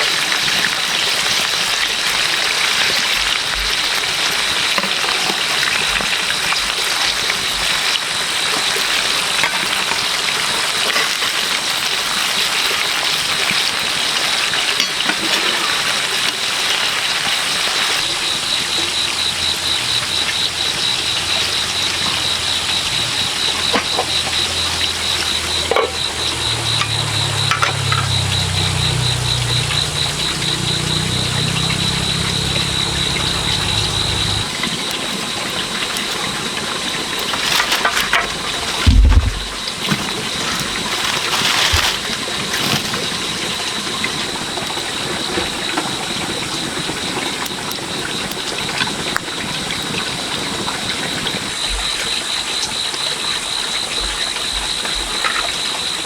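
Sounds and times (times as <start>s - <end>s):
rushing water: 0.0s - 56.0s
small engine running: 17.5s - 45.5s
steady high whine: 18.0s - 37.3s.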